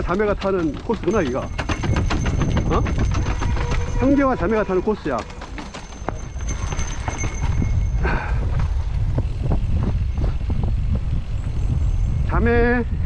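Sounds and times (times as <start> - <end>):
bike clattering over ground: 0.0 - 4.2
wind and tyre rumble: 0.0 - 13.0.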